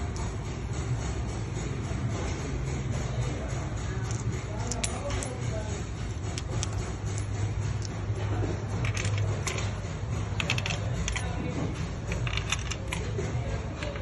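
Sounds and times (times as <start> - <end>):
steady low hum: 0.0 - 14.0
metal tools clinking: 4.0 - 14.0.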